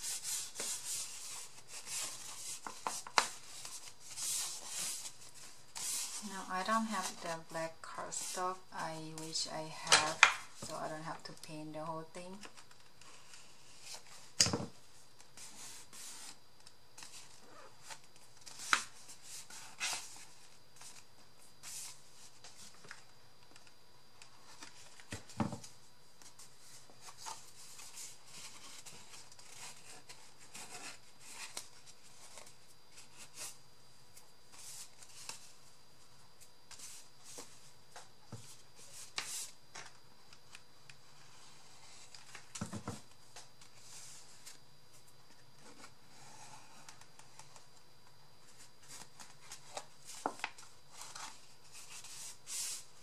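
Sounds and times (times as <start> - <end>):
paper rustling: 0.0 - 10.8.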